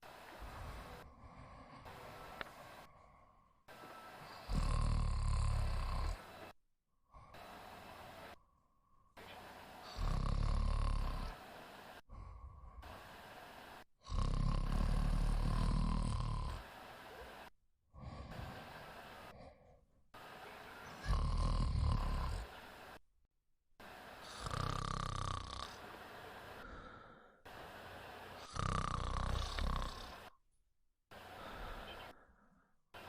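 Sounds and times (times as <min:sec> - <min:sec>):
woman snoring: 0:03.7 - 0:06.5, 0:09.8 - 0:11.4, 0:14.0 - 0:17.2, 0:20.3 - 0:23.0, 0:24.2 - 0:27.3, 0:28.3 - 0:30.4.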